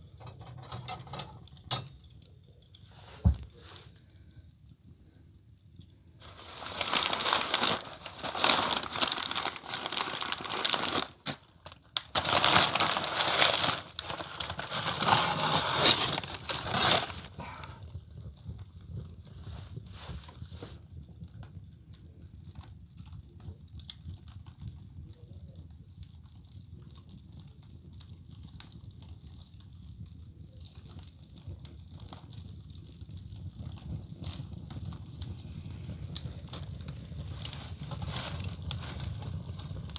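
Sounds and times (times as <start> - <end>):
fire crackling and popping: 0.0 - 39.9
paper crinkling: 6.2 - 17.8, 36.4 - 39.6.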